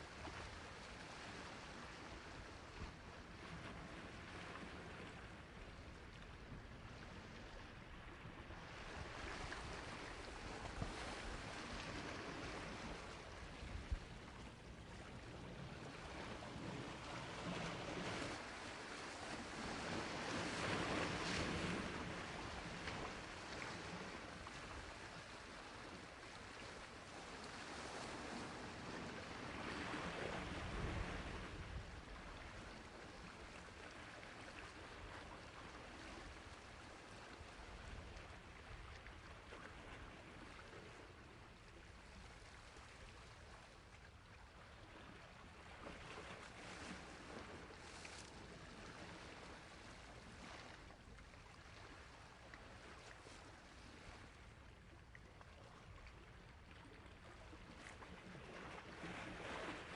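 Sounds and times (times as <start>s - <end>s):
sea waves washing on shore: 0.0s - 43.6s.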